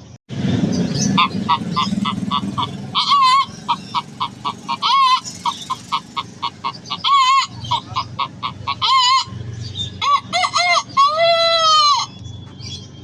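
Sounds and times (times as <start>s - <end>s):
man imitating chicken clucking: 1.2s - 9.3s.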